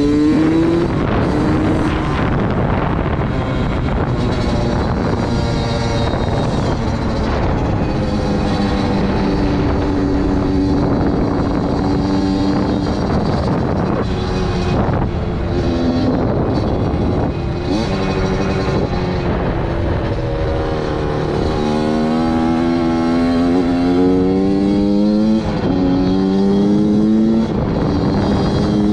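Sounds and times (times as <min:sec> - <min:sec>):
two-stroke engine revving: 0:00.0 - 0:28.9.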